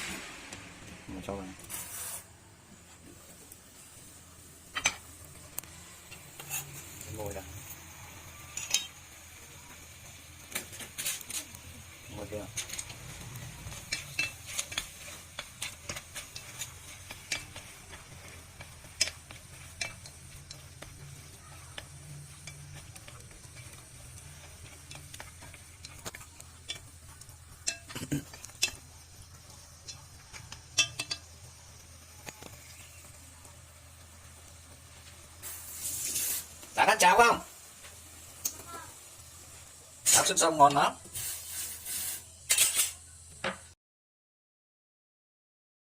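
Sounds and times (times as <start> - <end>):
faint steady hiss: 0.0 - 43.8
utensil clinking and scraping pot: 4.6 - 33.6, 40.0 - 43.6.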